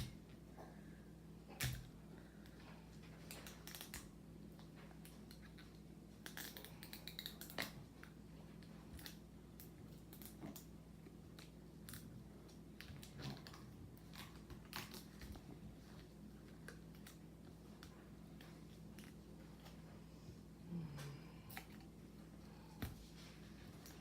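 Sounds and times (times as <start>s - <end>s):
wrapping crinkling and rustling: 3.0s - 10.7s, 11.3s - 19.8s.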